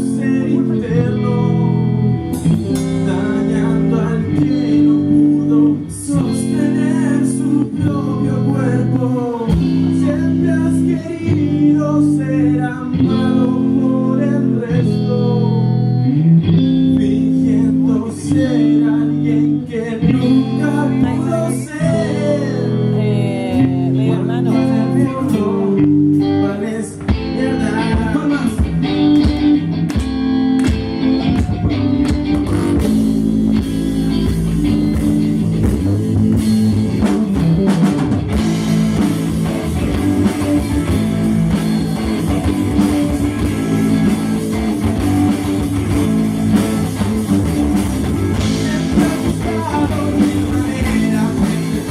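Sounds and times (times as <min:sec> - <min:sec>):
person singing: 0:00.0 - 0:29.7, 0:30.8 - 0:51.9
guitar: 0:00.0 - 0:51.9
rock band playing: 0:00.0 - 0:51.9.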